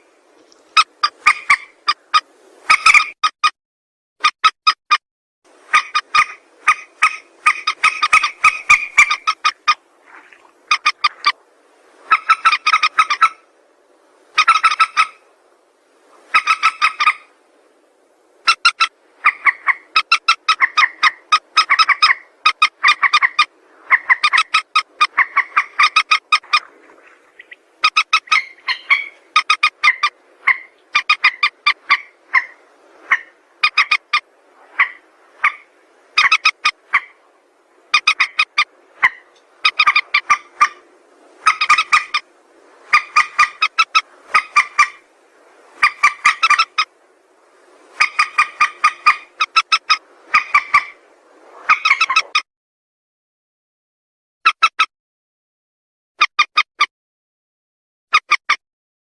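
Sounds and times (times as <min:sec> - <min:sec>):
rail bird clucking calls: 0:00.0 - 0:03.4, 0:05.6 - 0:11.4, 0:12.0 - 0:13.5, 0:14.3 - 0:15.3, 0:16.2 - 0:17.4, 0:18.4 - 0:37.3, 0:37.9 - 0:47.0, 0:47.7 - 0:51.0, 0:51.6 - 0:52.4.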